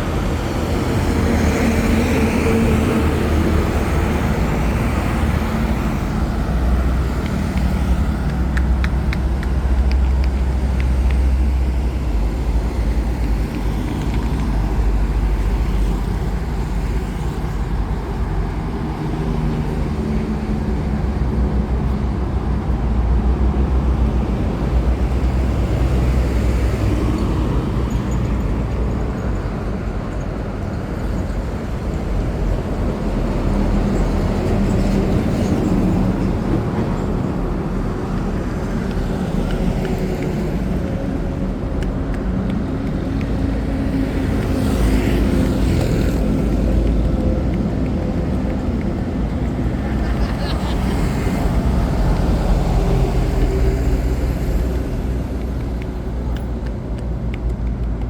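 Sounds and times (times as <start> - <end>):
traffic engines humming: 0.0 - 58.0.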